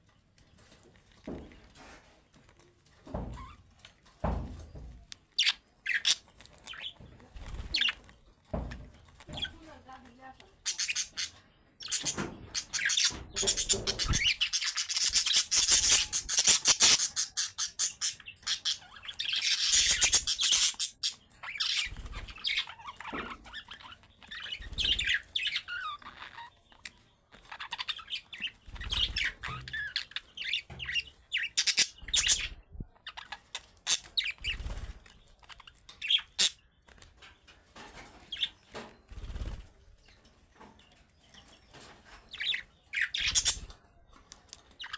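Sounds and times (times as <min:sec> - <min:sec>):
budgerigars chattering and chirping: 0:05.3 - 0:08.1, 0:10.6 - 0:36.8, 0:38.2 - 0:39.6, 0:42.3 - 0:43.8, 0:44.6 - 0:44.9.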